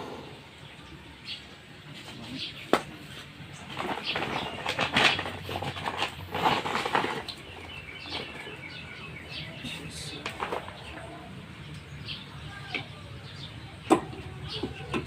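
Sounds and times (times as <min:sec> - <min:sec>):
bird chirps: 0:07.3 - 0:14.9.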